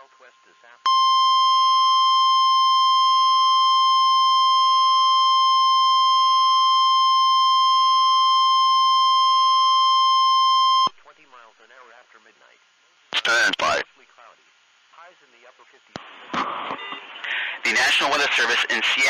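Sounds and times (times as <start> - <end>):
long loud alarm beep: 0.9 - 10.9.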